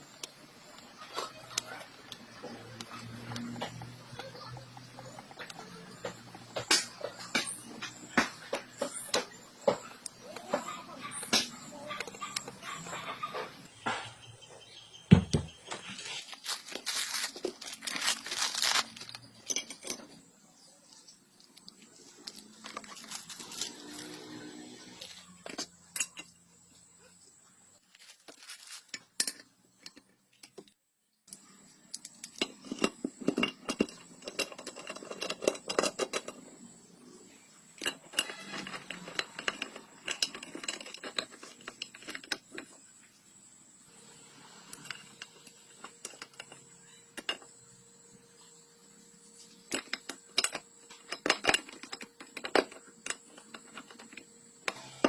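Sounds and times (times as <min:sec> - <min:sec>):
metal tools clinking: 0:16.0 - 0:20.3, 0:20.9 - 0:26.5, 0:27.9 - 0:30.6, 0:32.0 - 0:36.5, 0:37.8 - 0:42.9, 0:44.7 - 0:47.5, 0:49.7 - 0:54.8.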